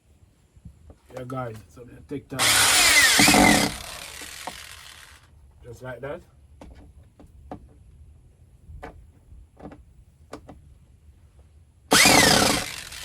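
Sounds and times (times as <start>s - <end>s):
power drill driving a screw: 2.4s - 5.2s, 11.9s - 13.0s.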